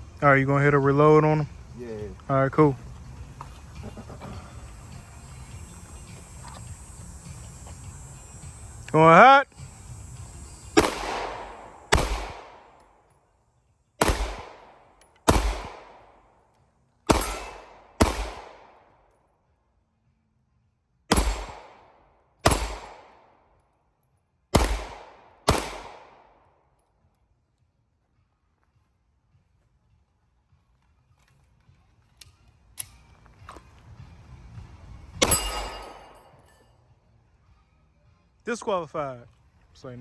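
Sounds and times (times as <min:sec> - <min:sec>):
pistol shots: 0:10.7 - 0:13.0, 0:14.0 - 0:16.3, 0:17.1 - 0:19.0, 0:21.1 - 0:23.4, 0:24.5 - 0:26.5, 0:35.2 - 0:36.4.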